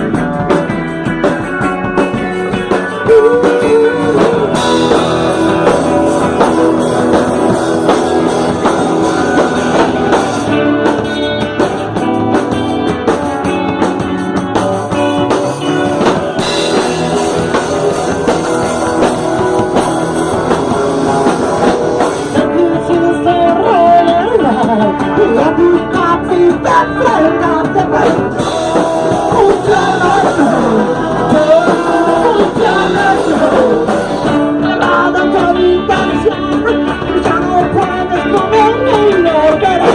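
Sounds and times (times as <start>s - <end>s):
drums: 0.0s - 39.9s
electric guitar: 0.0s - 39.9s
person singing: 1.9s - 11.0s, 22.3s - 39.9s.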